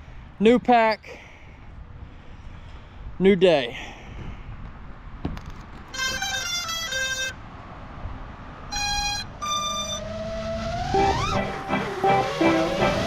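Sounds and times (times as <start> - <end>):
motors whining: 8.8 - 13.0
motor startup beeps: 9.4 - 13.0.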